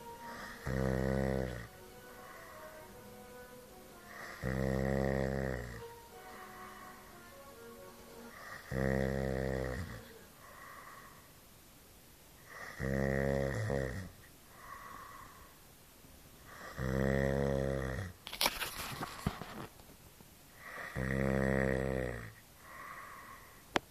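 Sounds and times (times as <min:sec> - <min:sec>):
loud rattling snoring: 0:00.6 - 0:01.7, 0:04.3 - 0:05.8, 0:08.7 - 0:10.0, 0:12.5 - 0:14.1, 0:16.8 - 0:18.1, 0:20.7 - 0:22.3.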